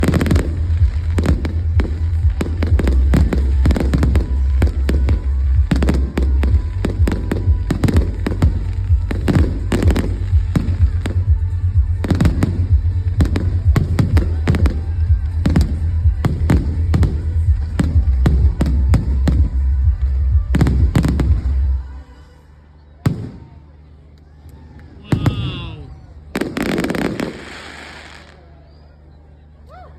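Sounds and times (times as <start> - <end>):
fireworks bursting with bangs: 0.0 - 21.9, 25.0 - 28.6
fireworks crackling: 0.0 - 22.2, 24.8 - 28.7
low rumble: 0.0 - 22.3.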